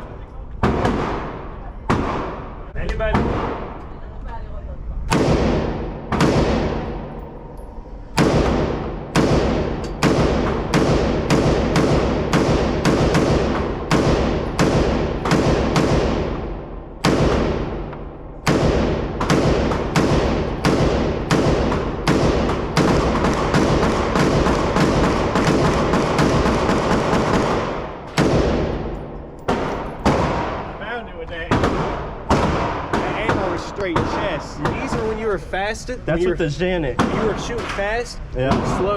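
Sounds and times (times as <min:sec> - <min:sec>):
rapid gunfire: 0:00.6 - 0:02.6, 0:05.1 - 0:07.1, 0:08.2 - 0:30.8, 0:31.5 - 0:35.2.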